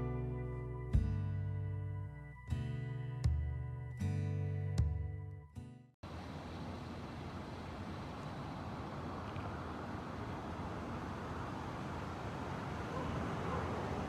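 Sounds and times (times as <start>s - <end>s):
outdoor background noise: 6.0s - 14.0s.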